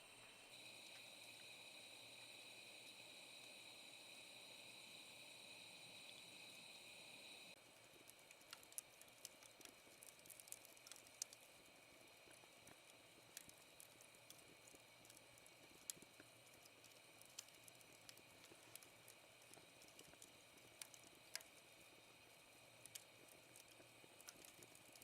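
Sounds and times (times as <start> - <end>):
quiet hiss: 0.0 - 25.0
steady high hiss: 0.0 - 25.0
small clicks and ticks: 0.5 - 25.0.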